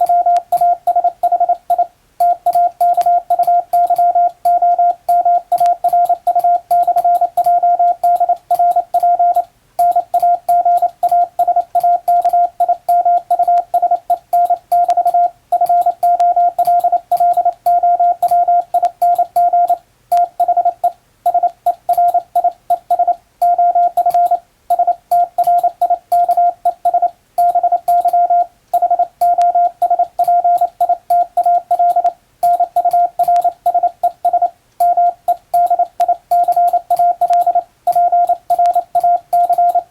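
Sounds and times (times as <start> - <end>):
morse code beeps: 0.0 - 39.9
telegraph key clicks: 29.2 - 39.9.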